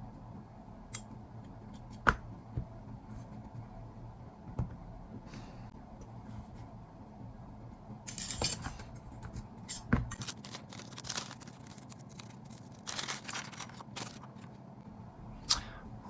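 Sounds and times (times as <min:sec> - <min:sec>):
metal parts scraping: 0:08.1 - 0:14.5.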